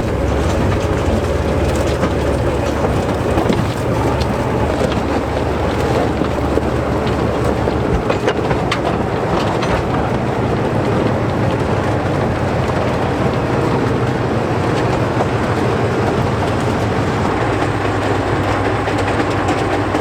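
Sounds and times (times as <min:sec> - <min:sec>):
low hum: 0:00.0 - 0:08.2
freight train wheels rumbling: 0:00.0 - 0:20.0.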